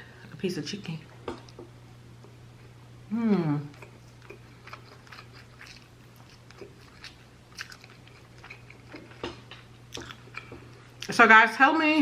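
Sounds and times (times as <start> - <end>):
person chewing food: 3.7 - 11.1.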